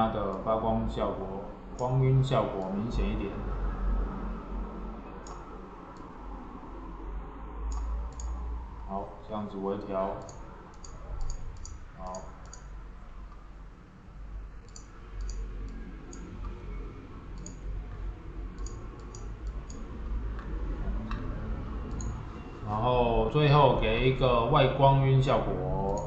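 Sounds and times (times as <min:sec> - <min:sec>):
steady low hum: 0:00.0 - 0:26.0
computer mouse clicking: 0:05.2 - 0:06.2, 0:07.7 - 0:08.4, 0:10.2 - 0:12.7, 0:14.6 - 0:16.6, 0:17.4 - 0:21.2, 0:21.8 - 0:22.2.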